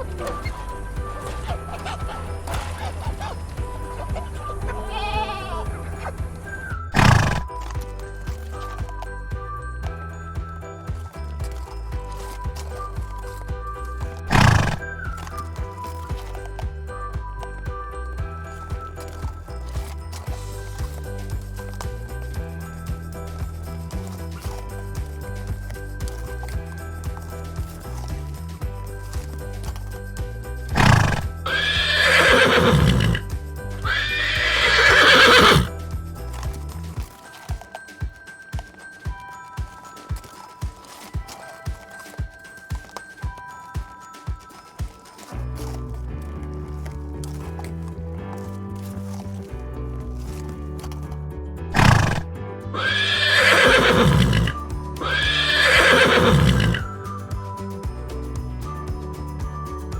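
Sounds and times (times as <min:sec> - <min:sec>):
horse whinnying: 0:00.0 - 0:07.7, 0:14.3 - 0:15.2, 0:30.7 - 0:35.8, 0:51.8 - 0:57.0
horse breath burst: 0:00.0 - 0:08.8, 0:14.3 - 0:16.6, 0:30.7 - 0:37.7, 0:51.7 - 0:56.9
music with steady beat: 0:00.0 - 0:48.4, 0:51.8 - 0:59.9.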